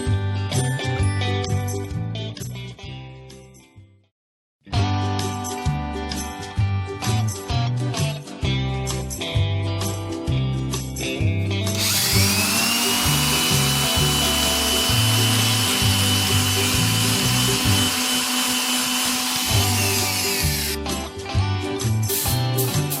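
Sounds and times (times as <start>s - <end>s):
background music: 4.7s - 23.0s
power tool whining: 11.8s - 20.8s.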